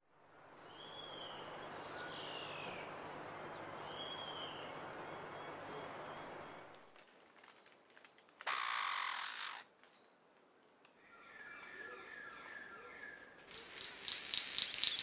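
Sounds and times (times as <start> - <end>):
steady background hiss: 0.1 - 6.9.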